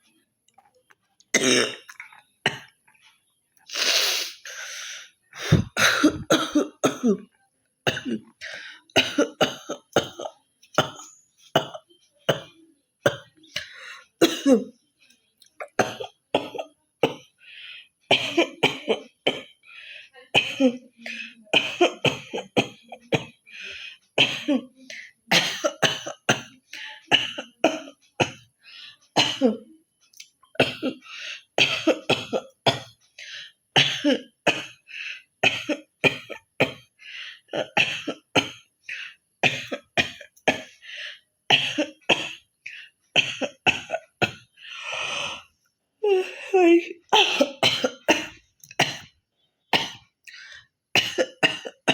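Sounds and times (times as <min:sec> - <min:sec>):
woman coughing and hawking: 0:05.4 - 0:07.3, 0:08.9 - 0:14.7, 0:15.6 - 0:17.3, 0:18.1 - 0:19.5, 0:20.3 - 0:23.4, 0:24.2 - 0:28.4, 0:29.2 - 0:29.7, 0:30.6 - 0:31.0, 0:33.8 - 0:36.9, 0:43.2 - 0:44.5, 0:46.0 - 0:49.1, 0:51.0 - 0:51.9.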